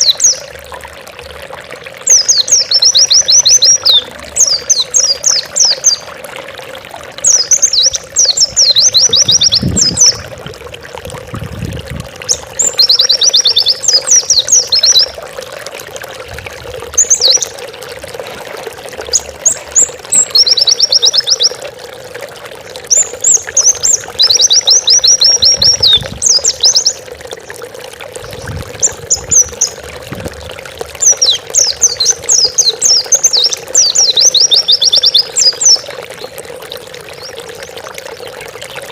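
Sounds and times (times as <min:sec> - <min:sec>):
bird singing rapid high chirps: 0:02.1 - 0:06.1, 0:07.2 - 0:10.2, 0:12.3 - 0:15.1, 0:17.0 - 0:17.5, 0:19.1 - 0:21.6, 0:22.9 - 0:27.0, 0:31.0 - 0:35.9.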